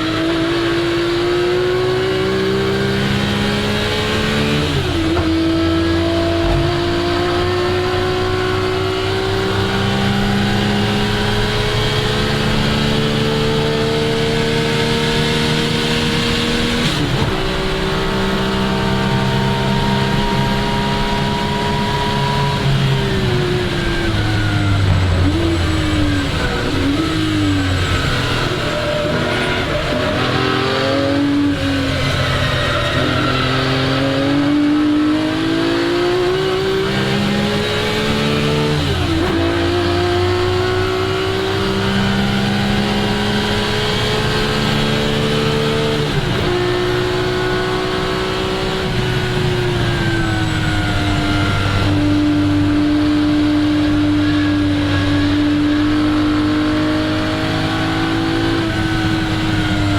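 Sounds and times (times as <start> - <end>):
car engine accelerating: 0.0 - 59.9.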